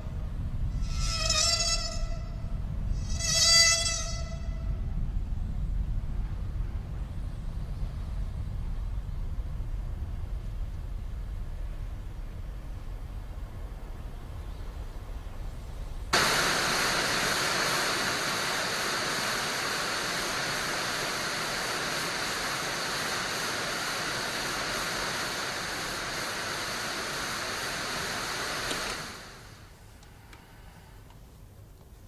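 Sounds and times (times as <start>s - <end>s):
steady rushing noise: 4.8s - 30.3s.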